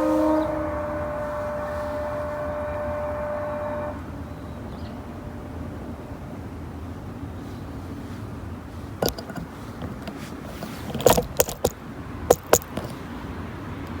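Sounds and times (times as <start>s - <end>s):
sharp clicks and knocks: 9.0s - 13.0s.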